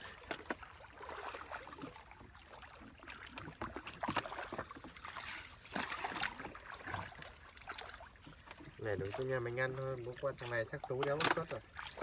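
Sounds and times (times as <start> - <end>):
water sloshing and splashing: 0.0 - 12.0
knocking of paddled boat: 3.6 - 12.0.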